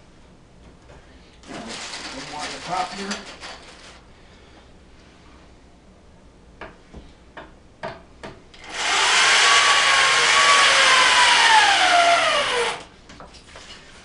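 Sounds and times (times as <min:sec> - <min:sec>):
electric drill running: 0:08.6 - 0:12.9.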